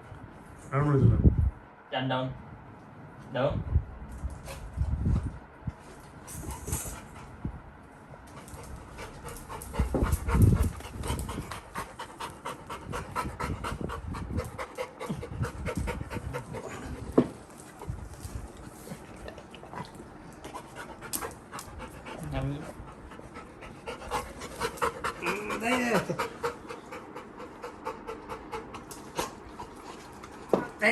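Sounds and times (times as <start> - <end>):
puppy panting: 8.3 - 30.8.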